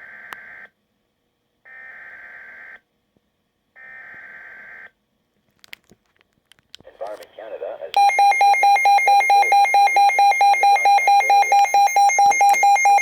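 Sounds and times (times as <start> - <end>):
static crackles: 6.8 - 8.0, 10.6 - 13.0
digital data tone bursts: 8.0 - 13.0.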